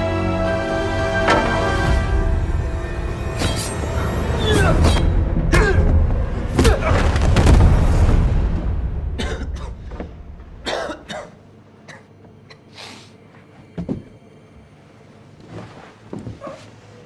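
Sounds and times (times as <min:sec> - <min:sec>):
person coughing: 0:09.2 - 0:09.9, 0:10.6 - 0:12.8.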